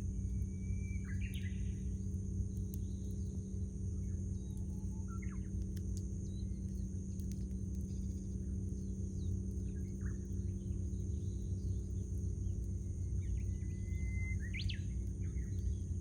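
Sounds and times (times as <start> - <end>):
small birds chirping: 8.8 - 15.9.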